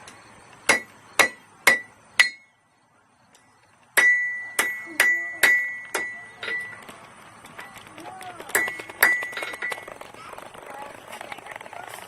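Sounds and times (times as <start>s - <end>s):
hammer striking iron on anvil: 0.7s - 2.5s, 4.0s - 6.7s.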